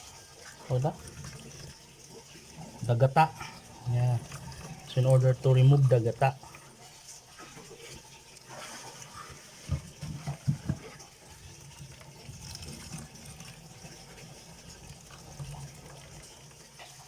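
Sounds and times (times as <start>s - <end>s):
liquid trickling into a bowl: 0.0s - 17.0s
hand squeezing coconut: 7.3s - 17.0s.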